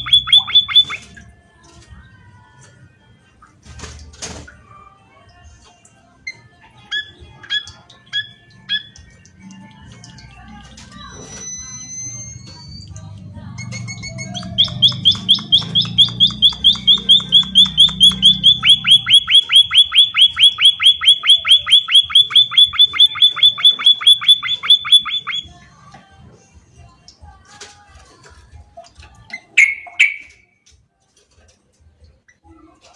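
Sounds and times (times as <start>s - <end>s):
bird trilling: 0.0s - 1.2s, 6.3s - 9.2s, 13.6s - 25.6s, 29.3s - 30.4s
rising whistle: 13.6s - 25.5s.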